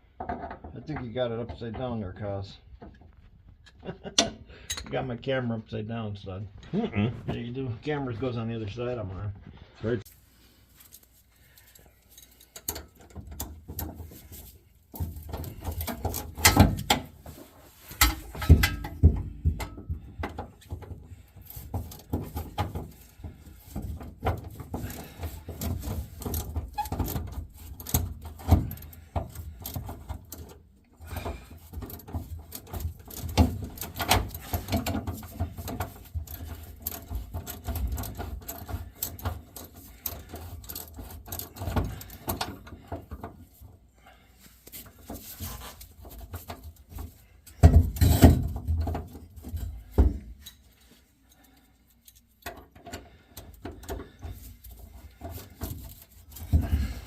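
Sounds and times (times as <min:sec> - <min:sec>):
hand tools knocking on metal: 0:18.0 - 0:20.4.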